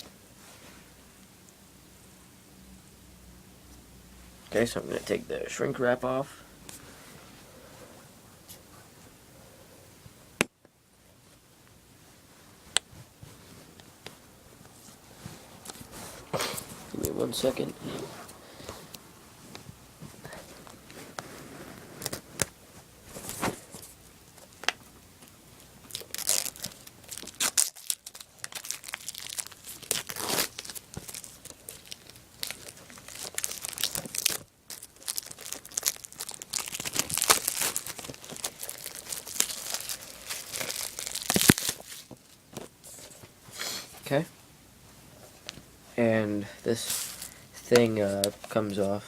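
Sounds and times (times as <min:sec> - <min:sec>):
plastic wrap crinkling and tearing: 0:25.8 - 0:42.4, 0:46.8 - 0:47.4.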